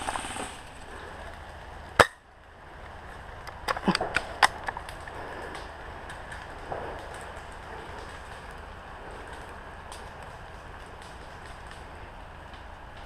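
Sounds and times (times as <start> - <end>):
clicks and snaps: 3.4 - 8.6.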